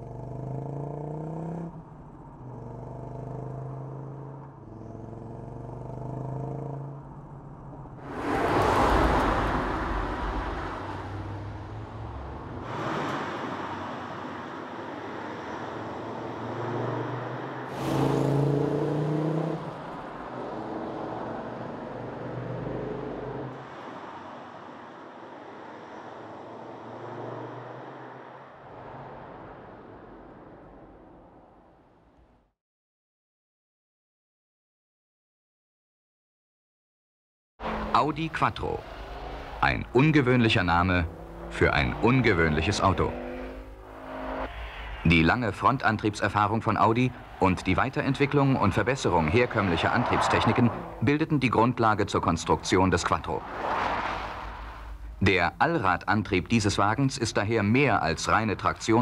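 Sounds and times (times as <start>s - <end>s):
car engine revving: 0.0s - 31.5s, 37.6s - 57.2s
loud rushes of noise: 43.0s - 51.0s.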